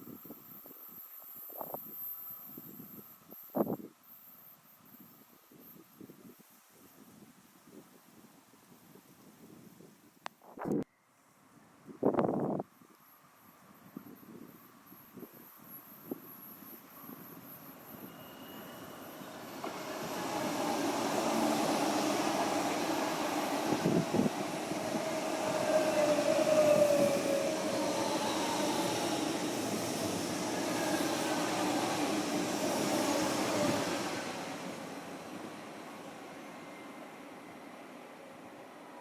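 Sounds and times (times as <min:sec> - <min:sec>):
train passing: 0:14.6 - 0:39.0
wheel squeal: 0:17.7 - 0:20.4.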